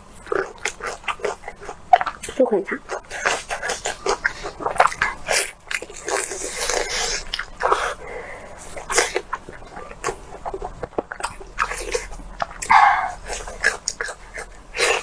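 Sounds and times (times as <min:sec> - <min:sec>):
wet chewing and smacking: 0:00.0 - 0:15.0
breathy bursts: 0:12.7 - 0:13.3.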